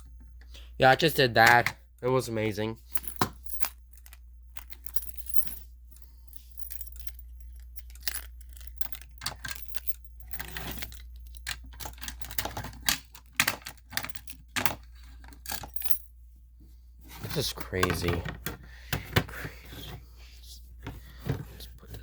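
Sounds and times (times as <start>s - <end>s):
metallic clicks and rattles: 6.6s - 16.0s.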